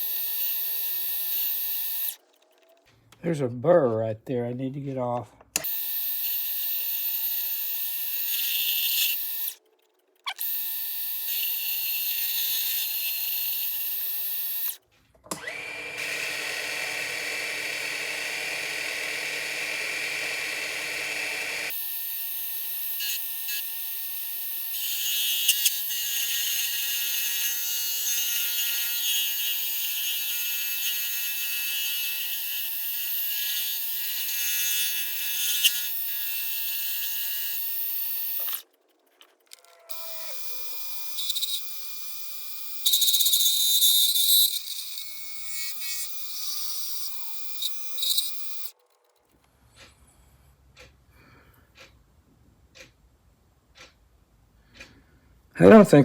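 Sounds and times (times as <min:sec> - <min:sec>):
lathe motor whining: 0:14.6 - 0:21.7.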